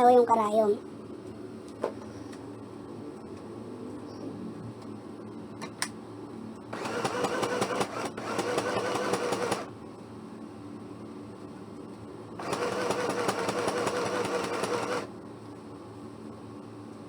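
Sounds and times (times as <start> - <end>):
sewing machine motor running: 6.7 - 9.7, 12.4 - 15.1
sewing machine click: 6.8 - 9.7, 12.4 - 15.1.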